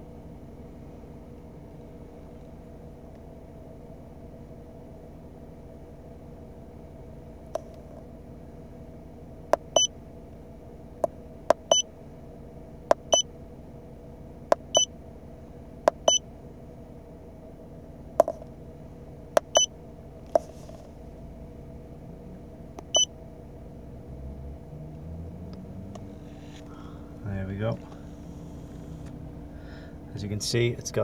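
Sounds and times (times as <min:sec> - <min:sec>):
low electrical hum: 0:00.0 - 0:31.0
keypad button clicks: 0:09.6 - 0:09.9, 0:11.5 - 0:11.8, 0:12.9 - 0:13.2, 0:14.5 - 0:14.9, 0:15.9 - 0:16.2, 0:18.2 - 0:18.4, 0:19.4 - 0:19.7
short high beeps: 0:11.6 - 0:11.8, 0:16.0 - 0:16.2, 0:19.4 - 0:19.7.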